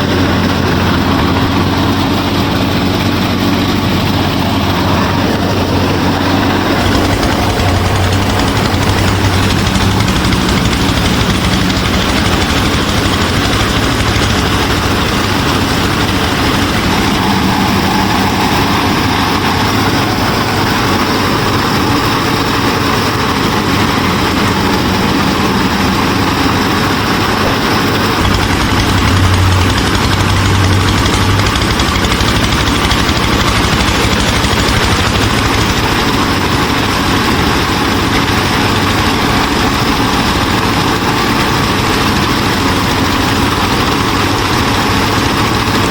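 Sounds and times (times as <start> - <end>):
engine droning: 0.0 - 45.9.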